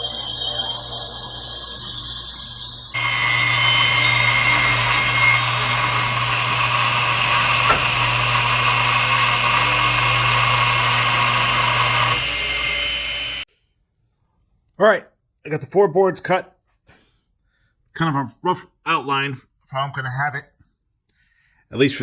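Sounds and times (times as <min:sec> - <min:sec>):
power saw cutting wood: 0:00.0 - 0:13.5.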